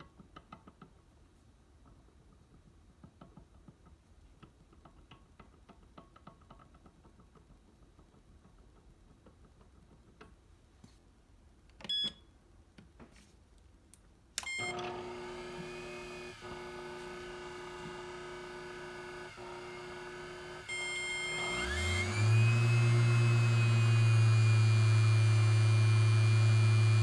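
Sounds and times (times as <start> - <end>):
control panel beep: 11.9 - 12.2
vacuum pump humming: 14.4 - 27.0.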